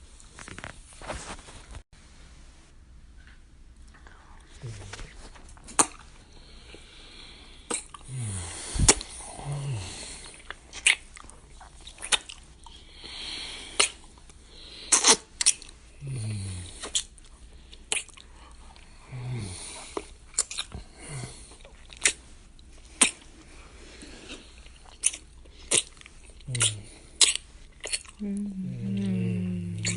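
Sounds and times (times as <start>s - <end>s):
wet lip smacks: 5.7s - 6.1s, 7.7s - 8.1s, 10.3s - 12.8s, 13.8s - 14.3s, 14.9s - 15.8s, 17.9s - 18.3s, 19.9s - 20.8s, 21.6s - 22.2s, 23.0s - 23.2s, 24.9s - 28.2s
breathy exhales: 6.3s - 10.4s, 28.2s - 29.9s
low falling hums: 28.2s - 29.9s.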